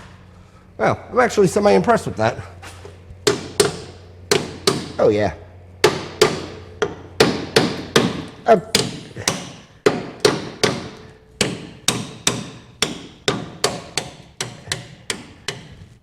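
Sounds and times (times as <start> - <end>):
hammer blows on steel: 3.3 - 5.1, 5.8 - 15.8.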